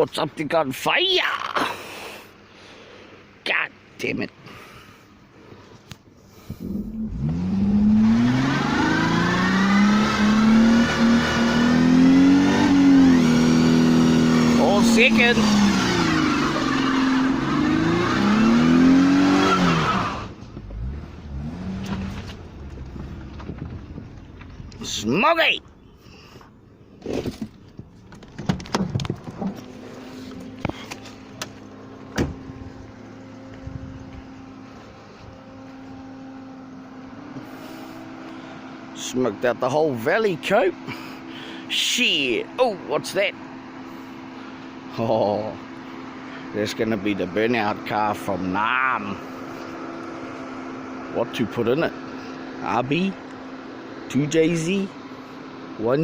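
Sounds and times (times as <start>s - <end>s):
car engine revving: 6.6s - 25.4s.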